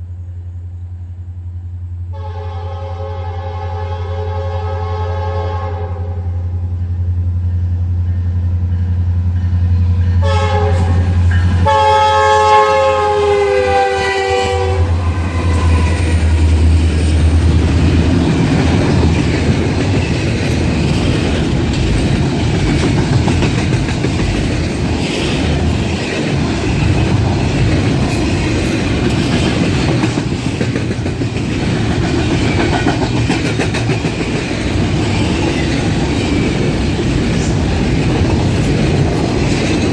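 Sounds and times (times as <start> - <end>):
diesel locomotive engine: 0.0 - 39.9
train horn blasts: 2.1 - 6.6, 10.1 - 16.5
rail car wheels clattering: 5.6 - 39.9.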